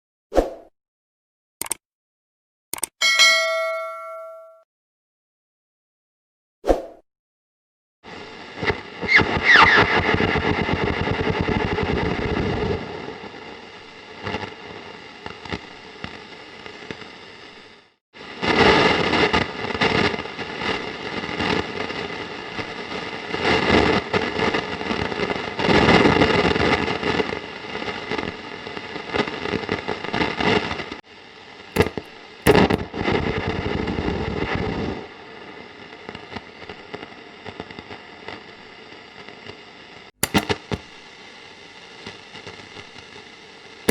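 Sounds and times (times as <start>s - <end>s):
sharp clicks: 1.6s - 1.8s, 2.7s - 3.0s, 31.8s - 32.8s, 40.2s - 40.9s
radio static hiss and crackle: 8.1s - 24.7s, 28.2s - 33.8s, 34.9s - 43.9s
radio whistle: 9.0s - 10.0s.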